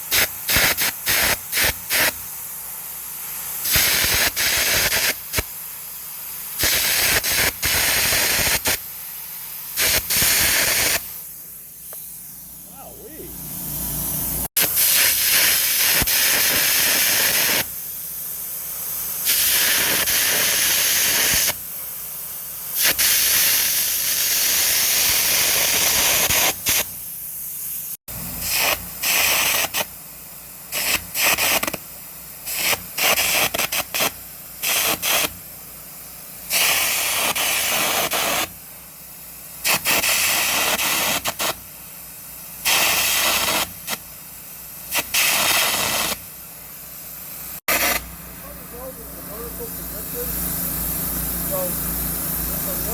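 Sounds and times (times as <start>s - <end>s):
arc gouging air jet hissing: 0.0s - 21.6s, 39.6s - 41.6s, 42.6s - 44.1s, 44.9s - 46.2s, 47.0s - 52.9s.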